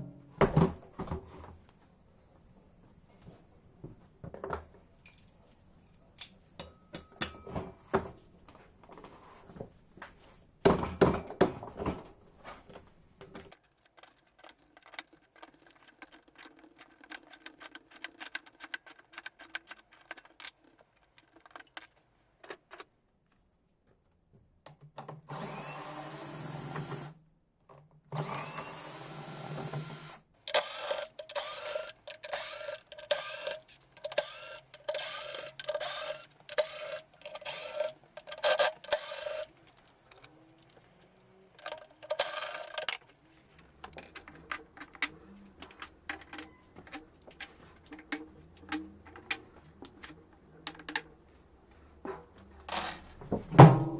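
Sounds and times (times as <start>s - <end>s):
metal and plastic parts knocking: 13.2s - 22.9s, 30.5s - 40.9s, 41.6s - 43.2s, 43.8s - 51.1s
handheld power tool running: 28.2s - 39.5s.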